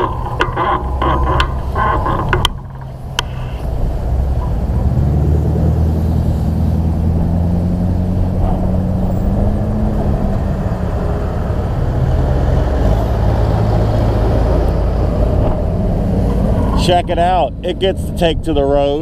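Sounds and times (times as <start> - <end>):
road noise: 0.0 - 19.0
vehicle engine drone: 0.0 - 19.0.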